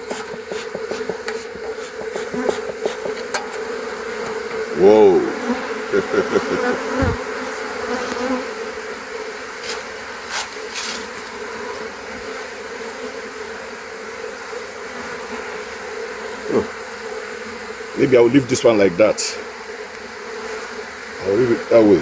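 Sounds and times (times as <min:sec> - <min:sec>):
bees flying past microphone: 0:00.0 - 0:18.5
bees buzzing: 0:00.0 - 0:22.0.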